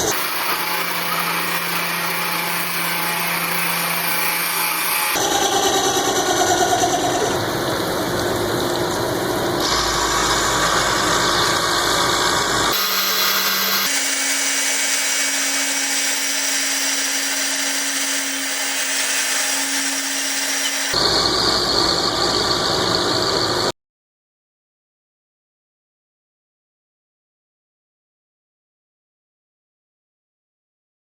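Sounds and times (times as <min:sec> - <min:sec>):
power tool machining steel: 0:00.0 - 0:07.4, 0:09.4 - 0:23.7.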